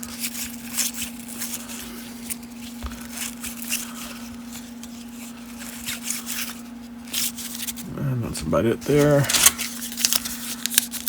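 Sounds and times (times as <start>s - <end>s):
steady low hum: 0.0s - 11.0s
cards flipped with papery swishes: 8.9s - 11.0s.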